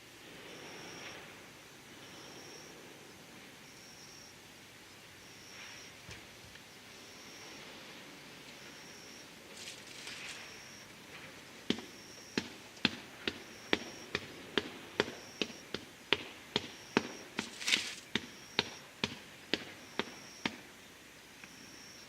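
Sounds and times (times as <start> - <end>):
faint high-pitched tone: 0.4 - 11.0, 21.3 - 22.0
short rustling burst: 17.4 - 18.1.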